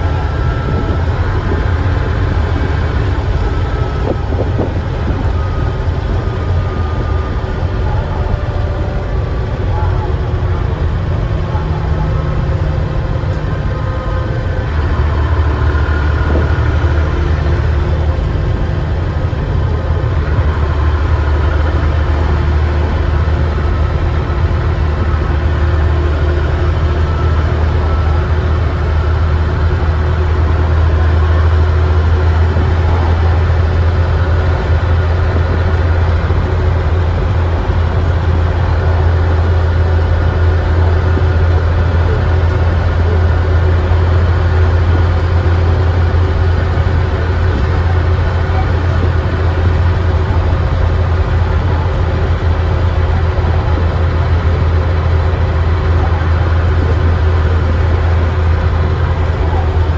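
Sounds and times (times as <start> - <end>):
bus diesel engine drone: 0.0 - 59.9.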